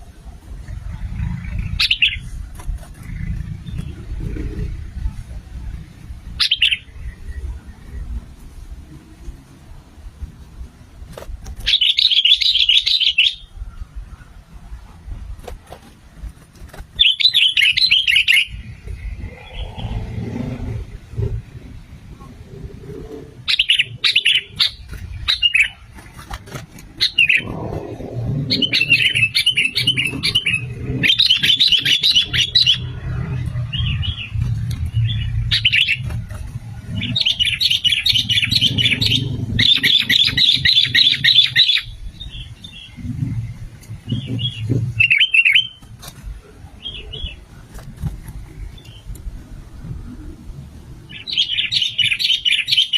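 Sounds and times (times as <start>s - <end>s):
low rumble: 0.0s - 11.1s, 18.5s - 45.1s
birds chattering: 0.6s - 8.2s, 11.6s - 14.6s, 16.5s - 49.1s, 51.0s - 52.9s.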